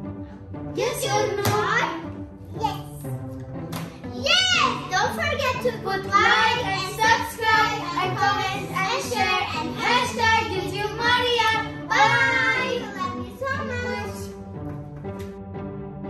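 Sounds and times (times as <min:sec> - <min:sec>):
background music: 0:00.0 - 0:16.0
child singing: 0:05.6 - 0:14.2.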